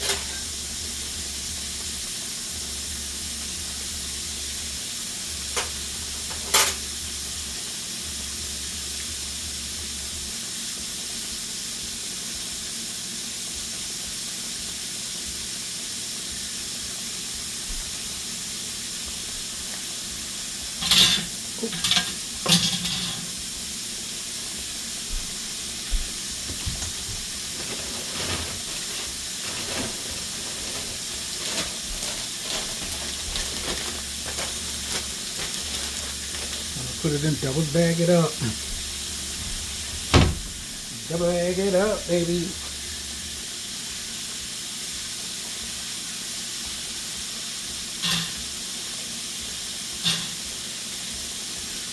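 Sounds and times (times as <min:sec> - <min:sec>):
kitchen utensils clinking: 0:00.0 - 0:00.6, 0:05.6 - 0:06.9, 0:20.8 - 0:23.4, 0:26.5 - 0:37.8, 0:48.0 - 0:48.5, 0:50.0 - 0:50.5
food sizzling in a pan: 0:00.0 - 0:51.9.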